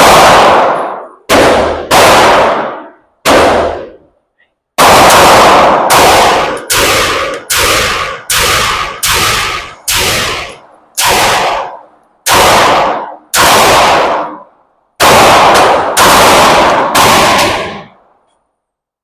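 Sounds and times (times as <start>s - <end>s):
pistol shots echoing indoors: 0.0s - 19.0s.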